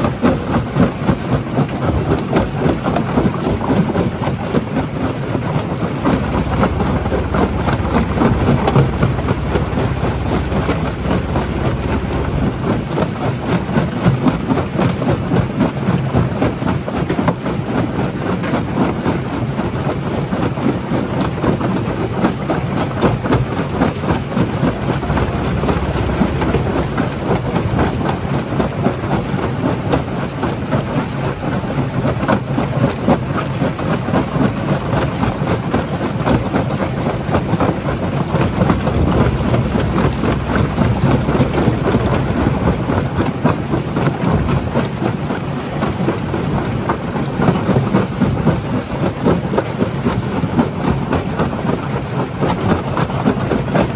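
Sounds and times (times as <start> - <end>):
rock crusher rumbling: 1.2 - 18.5, 22.5 - 32.1, 36.2 - 51.0.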